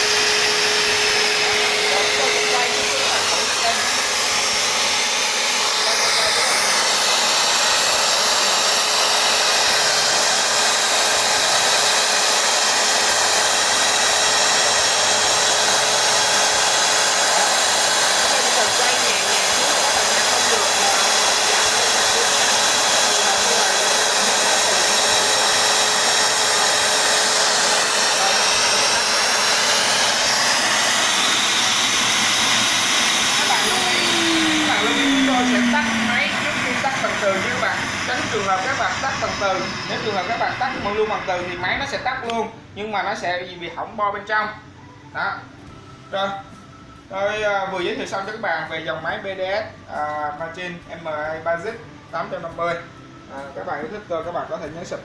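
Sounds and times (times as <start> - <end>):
core drill motor whirring: 0.0 - 42.3.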